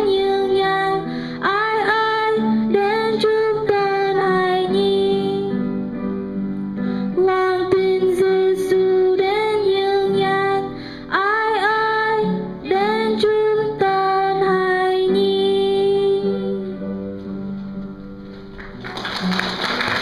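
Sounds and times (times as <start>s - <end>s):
woman singing: 0.0s - 5.8s, 7.1s - 17.1s.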